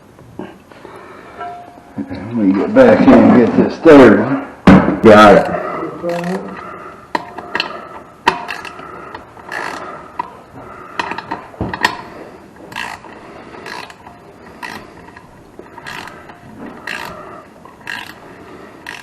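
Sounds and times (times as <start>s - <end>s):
sharp metal clicks: 5.4s - 10.3s, 12.7s - 18.2s
ratchet wrench clicking: 6.1s - 8.8s, 9.4s - 10.3s, 12.7s - 18.2s, 18.8s - 19.0s.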